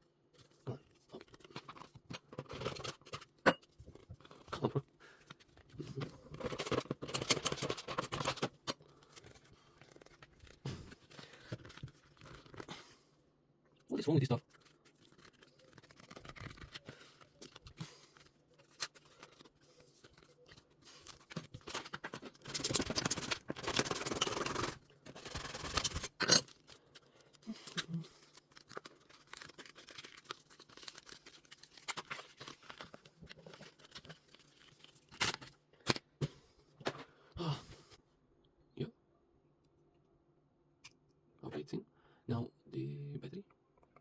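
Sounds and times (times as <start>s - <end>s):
packaging rustling: 5.2s - 12.7s, 14.4s - 35.9s
packaging tearing: 9.0s - 12.7s, 14.5s - 35.6s.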